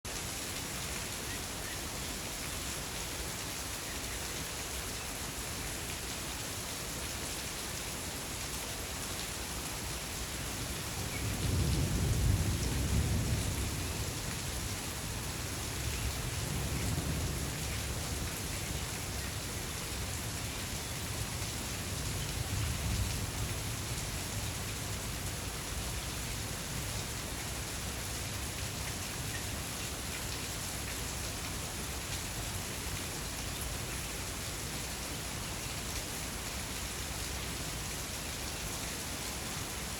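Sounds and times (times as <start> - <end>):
steady rain: 0.1 - 39.9
thunder rumbling: 11.2 - 15.3.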